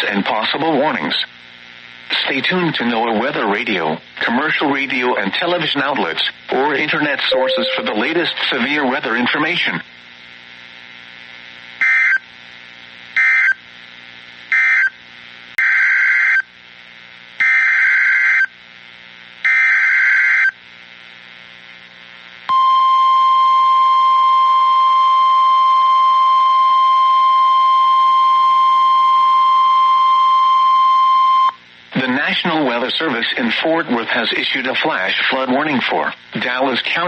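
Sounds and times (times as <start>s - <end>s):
steady warning alarm tone: 7.3s - 8.6s.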